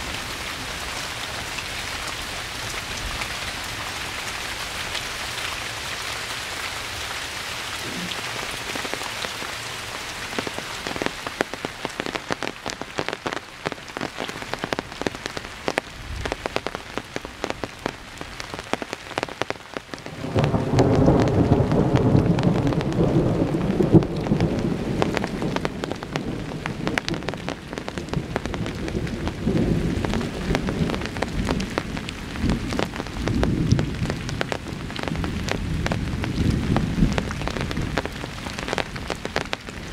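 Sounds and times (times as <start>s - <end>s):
raindrops ticking close by: 0.0s - 39.9s
steady rain falling: 0.0s - 39.9s
thunder rumbling: 7.8s - 9.5s, 20.0s - 39.9s.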